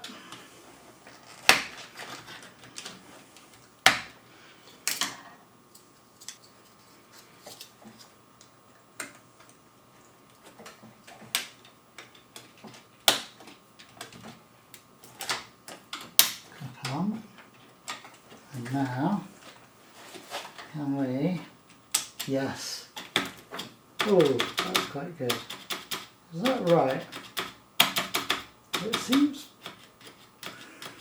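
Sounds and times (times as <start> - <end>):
plastic keyboard clicks: 23.0 - 31.0.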